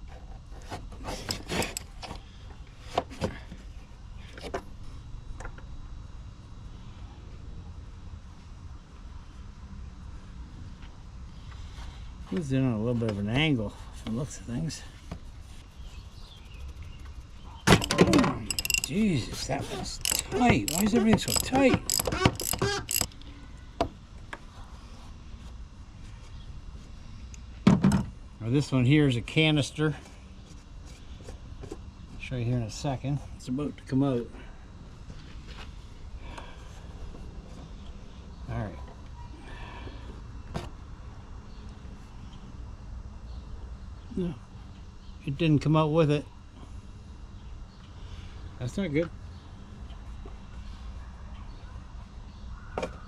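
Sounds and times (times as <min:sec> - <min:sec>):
loud tool clatter: 0:17.7 - 0:23.1
socket wrench clicking on metal: 0:17.8 - 0:19.0, 0:20.0 - 0:23.2.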